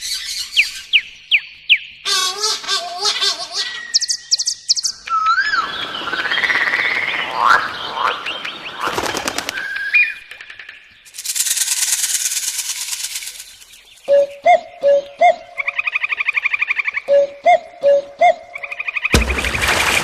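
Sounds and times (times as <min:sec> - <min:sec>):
birds whistling and chirping: 0:00.0 - 0:06.5, 0:07.6 - 0:10.3, 0:13.2 - 0:19.2
fast buzzy rattle: 0:11.1 - 0:13.9.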